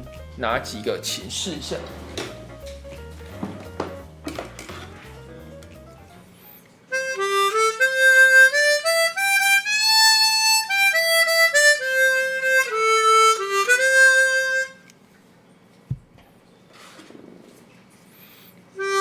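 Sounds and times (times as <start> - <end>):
harmonica melody: 4.8 - 14.9, 18.8 - 19.0.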